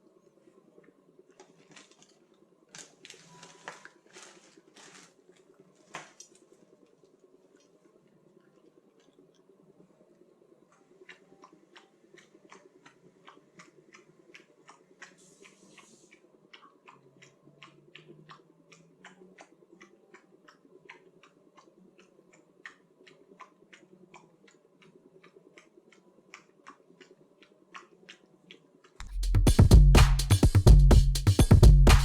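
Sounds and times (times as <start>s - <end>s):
faint irregular clicking: 4.1s - 29.1s.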